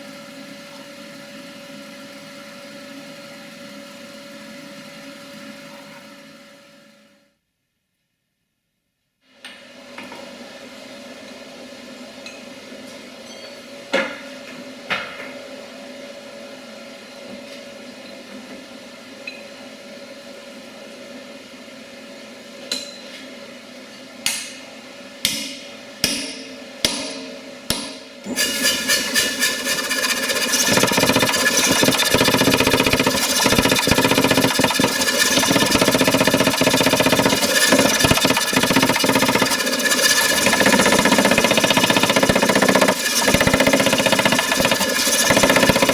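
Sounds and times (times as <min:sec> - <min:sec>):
hammer blows ringing on steel: 0:25.3 - 0:28.1
rapid mechanical hammering: 0:25.3 - 0:45.9.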